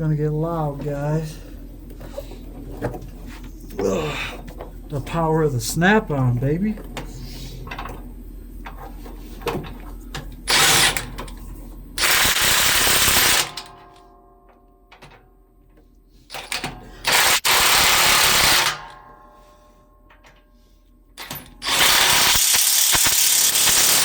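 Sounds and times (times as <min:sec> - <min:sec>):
impact wrench hammering nuts: 0:10.5 - 0:11.2, 0:12.0 - 0:13.8, 0:16.4 - 0:19.0, 0:21.2 - 0:24.0.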